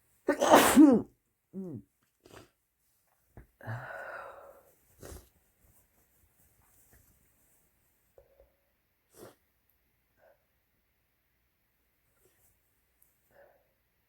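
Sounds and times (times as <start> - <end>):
person sneezing: 0.3 - 1.8.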